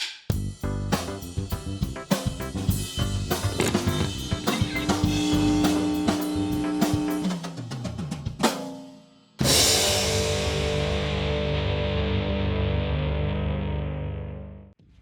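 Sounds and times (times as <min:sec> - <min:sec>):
upbeat music with drum kit: 0:00.0 - 0:11.5
loud held chord: 0:03.6 - 0:07.3.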